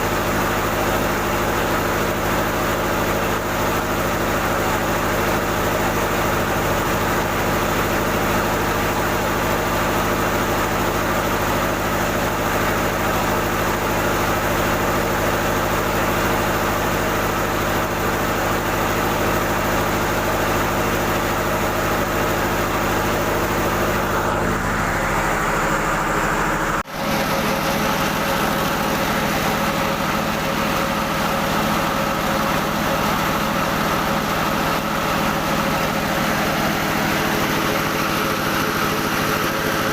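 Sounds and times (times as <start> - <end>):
rice mill machinery running: 0.0 - 39.9.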